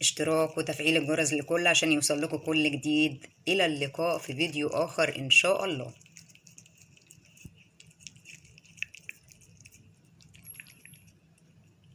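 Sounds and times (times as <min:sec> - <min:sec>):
cats chewing and lapping food: 0:05.6 - 0:11.9.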